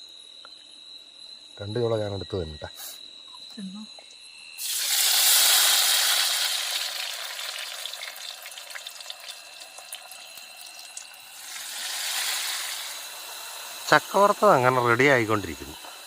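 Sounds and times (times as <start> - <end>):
crickets chirping: 0.0 - 16.0
food sizzling in hot oil: 4.6 - 16.0.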